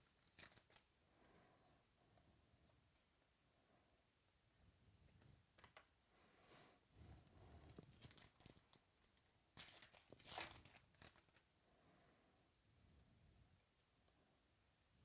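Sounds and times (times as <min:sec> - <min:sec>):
cards being handled: 0:00.0 - 0:00.8
wrapper tearing and crinkling: 0:00.1 - 0:00.8, 0:07.6 - 0:11.4.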